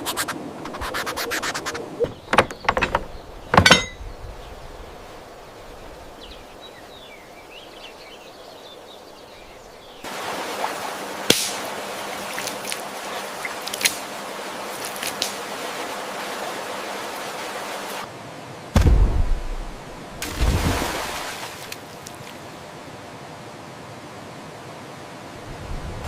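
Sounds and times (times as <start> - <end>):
water rushing: 9.0 - 26.0.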